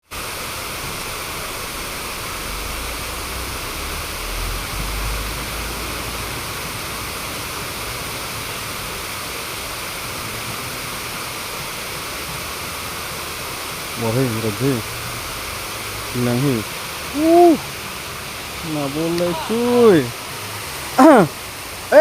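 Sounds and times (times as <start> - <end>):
river water rushing: 0.1 - 22.0.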